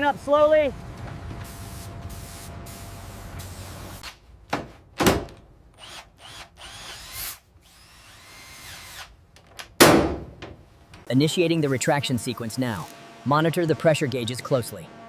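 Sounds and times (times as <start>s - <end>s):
loud sharp knocks: 9.8s - 10.6s
machinery whirring: 11.1s - 15.0s.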